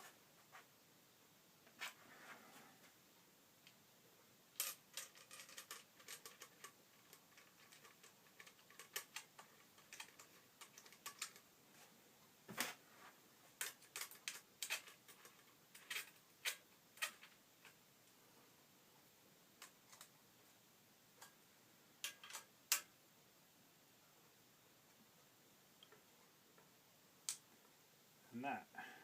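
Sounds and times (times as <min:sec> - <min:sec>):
small metal parts clicking: 0:04.6 - 0:11.4, 0:13.6 - 0:17.8, 0:22.0 - 0:22.9.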